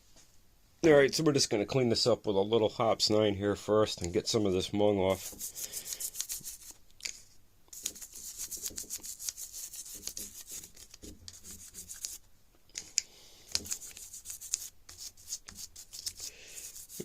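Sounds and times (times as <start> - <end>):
brush scrubbing metal: 5.1 - 6.8, 7.7 - 12.2, 13.5 - 17.0.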